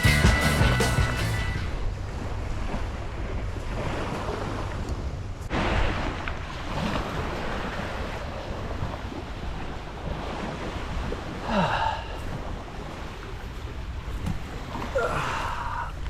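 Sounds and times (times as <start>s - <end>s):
wind buffeting microphone: 1.6s - 16.0s
water splashing: 5.5s - 16.0s.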